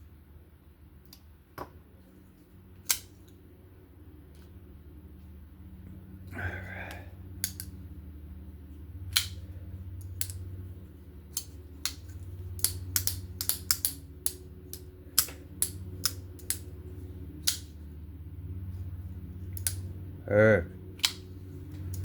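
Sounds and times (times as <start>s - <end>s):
low hum: 0.0s - 22.0s
folding knife clicks and taps: 7.4s - 7.7s, 9.1s - 9.4s, 11.3s - 16.6s, 17.4s - 17.7s, 19.6s - 19.8s, 21.0s - 21.2s.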